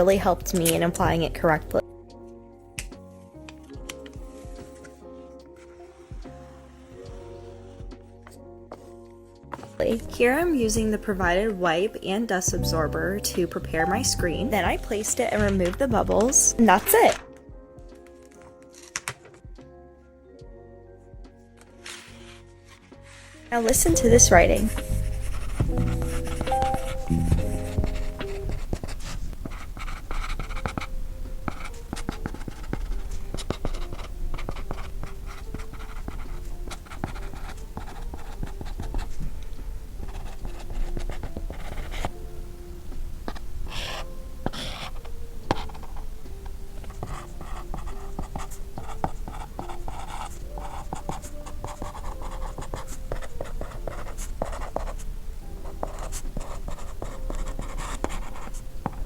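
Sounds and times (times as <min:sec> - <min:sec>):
stylus scratching on screen: 0:23.1 - 0:39.2, 0:43.3 - 0:46.0.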